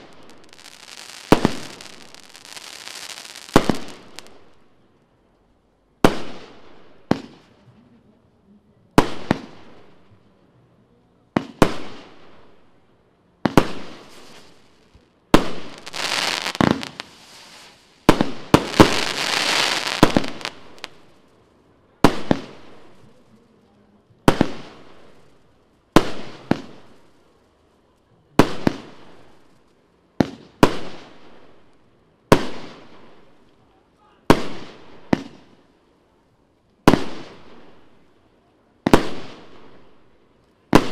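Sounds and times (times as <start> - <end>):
firework bangs: 0.0 - 4.6, 6.0 - 7.5, 11.4 - 12.6, 13.4 - 21.3, 22.0 - 23.2, 24.2 - 27.3, 28.4 - 31.7, 32.3 - 33.4, 34.2 - 35.6, 36.8 - 38.0, 38.8 - 40.9
firework crackling: 0.0 - 4.8, 13.4 - 35.7, 36.8 - 38.2, 38.8 - 40.9.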